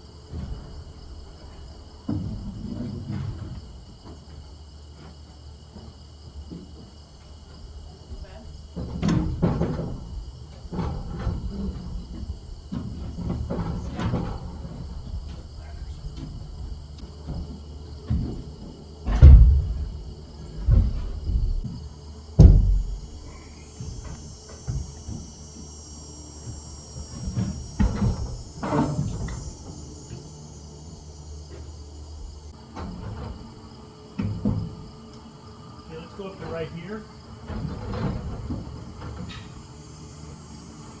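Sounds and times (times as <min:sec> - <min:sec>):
crickets chirping: 0:00.0 - 0:41.0
wood knocking and thudding: 0:02.0 - 0:25.8.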